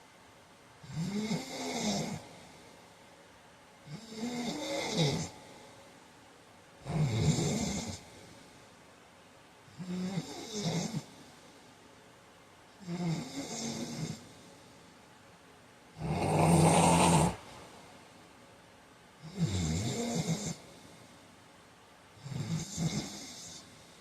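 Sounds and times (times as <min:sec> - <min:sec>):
man snoring: 0:00.8 - 0:02.2, 0:03.9 - 0:05.4, 0:06.8 - 0:08.0, 0:09.8 - 0:11.1, 0:12.8 - 0:14.2, 0:16.0 - 0:17.5, 0:19.2 - 0:20.6, 0:22.2 - 0:23.7.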